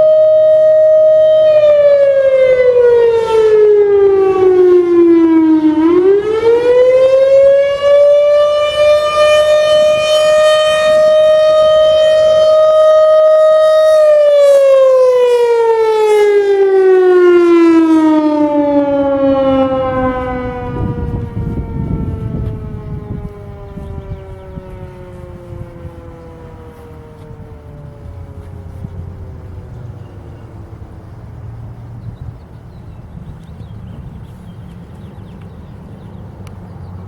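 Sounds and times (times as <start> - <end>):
outdoor warning siren: 0.0 - 32.0
low rumble: 18.6 - 26.7.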